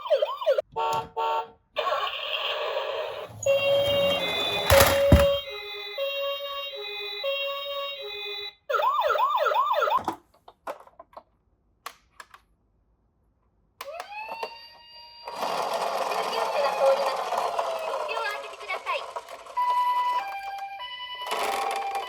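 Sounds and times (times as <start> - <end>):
toy electronic siren: 0.0 - 0.6, 1.8 - 10.1, 13.8 - 22.0.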